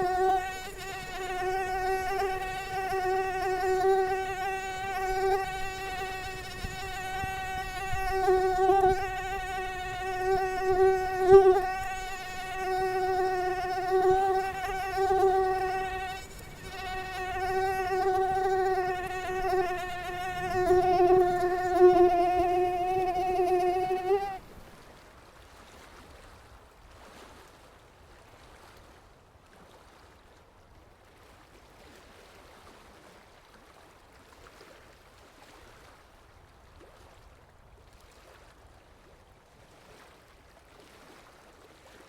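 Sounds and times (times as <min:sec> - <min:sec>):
mosquito whining buzz: 0:00.0 - 0:24.4.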